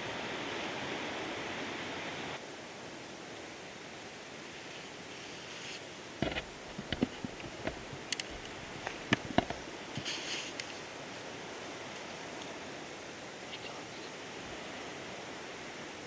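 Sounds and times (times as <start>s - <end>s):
steady hiss: 0.0s - 16.0s
small sharp clicks and knocks: 6.2s - 10.8s.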